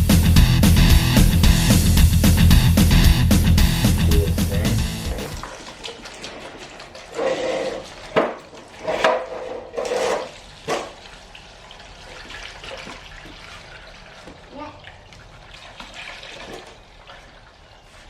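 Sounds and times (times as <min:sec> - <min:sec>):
liquid sloshing in a container: 0:05.1 - 0:18.0.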